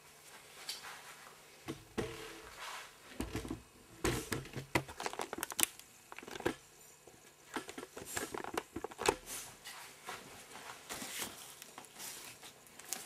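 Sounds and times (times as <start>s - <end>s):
packaging crinkling and tearing: 4.9s - 6.6s.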